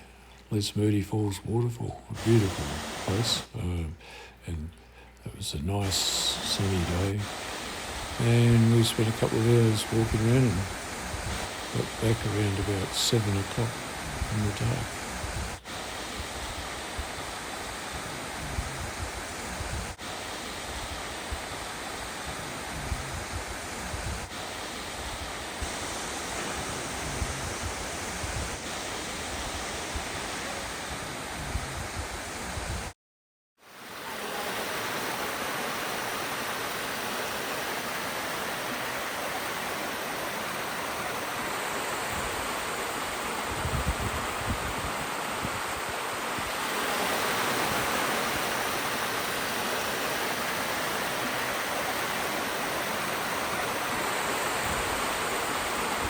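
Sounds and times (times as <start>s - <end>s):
waterfall rushing water: 2.2s - 3.7s, 5.8s - 32.9s, 33.7s - 56.0s.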